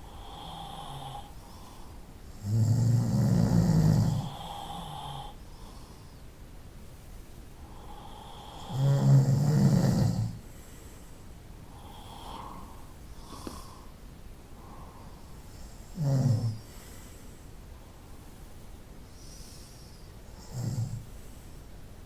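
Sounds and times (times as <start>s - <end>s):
soft breathing: 0.0s - 2.3s, 4.0s - 8.9s, 10.2s - 22.0s
person snoring: 0.1s - 1.7s, 2.4s - 5.4s, 7.8s - 10.4s, 15.9s - 16.7s.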